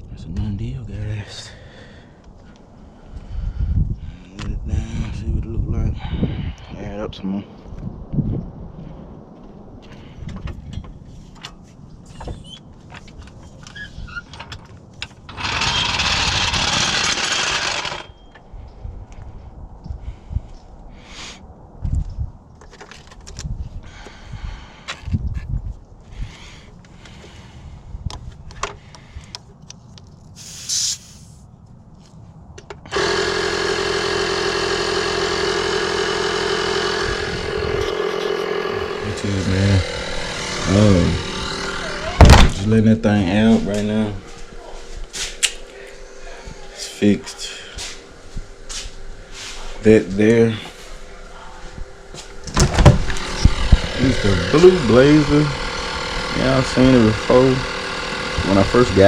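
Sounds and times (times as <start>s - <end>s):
air compressor humming: 15.1s - 18.2s, 32.9s - 59.0s
compressed air hissing into tire: 30.3s - 31.4s, 47.5s - 50.0s, 52.1s - 59.0s
hiss of air: 30.4s - 31.4s, 48.7s - 49.8s.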